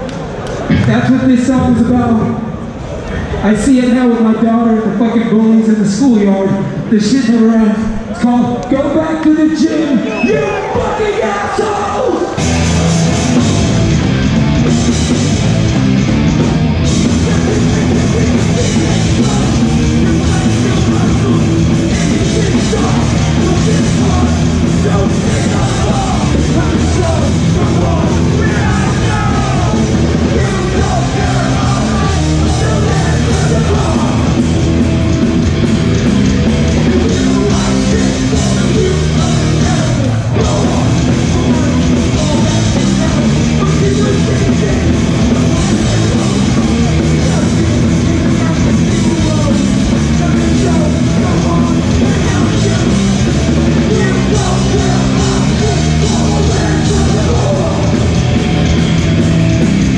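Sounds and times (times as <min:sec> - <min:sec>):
shouted vocals: 0:09.7 - 0:13.8, 0:17.1 - 0:34.8, 0:36.8 - 0:58.6
punk band playing live: 0:10.6 - 0:59.9.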